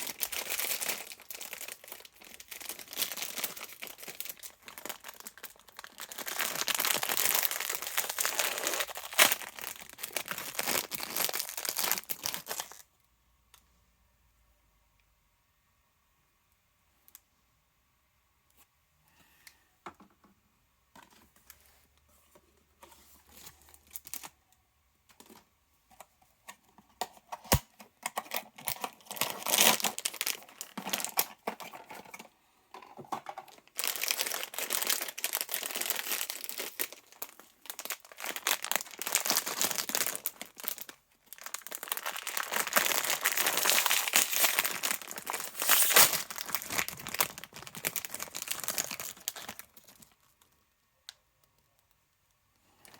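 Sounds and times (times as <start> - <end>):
packaging crinkling and tearing: 0.0 - 12.9, 23.3 - 24.4, 27.0 - 32.3, 33.1 - 50.6.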